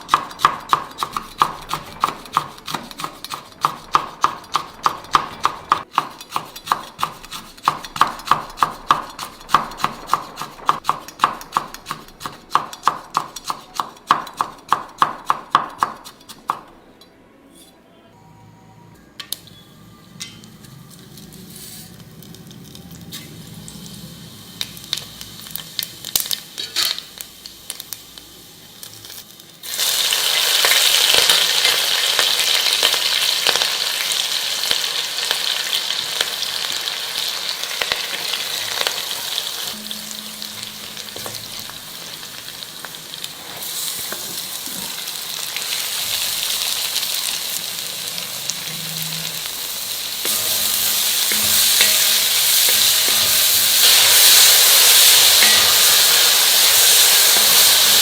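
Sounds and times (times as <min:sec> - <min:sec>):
food sizzling in hot oil: 0:20.9 - 0:58.0.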